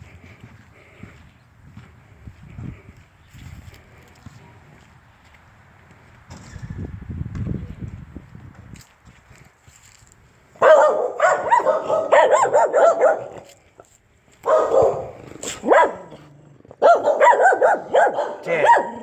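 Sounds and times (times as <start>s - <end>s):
dog barking and whining: 10.6s - 13.5s, 14.4s - 19.0s.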